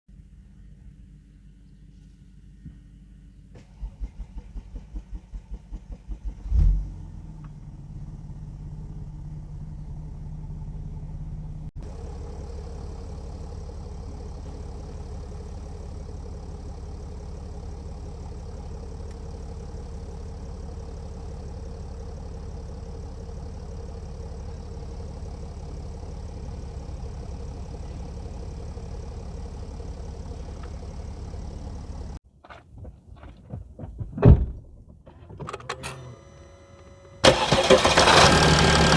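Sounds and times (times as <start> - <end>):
diesel engine idling roughly: 7.9 - 32.2, 37.0 - 38.9
starter cranking: 35.1 - 38.9.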